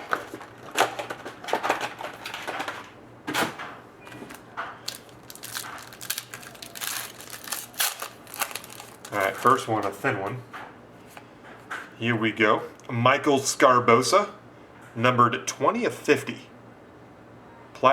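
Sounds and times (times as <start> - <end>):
cards and wrapping crinkling: 0.0 - 2.8, 4.2 - 10.1.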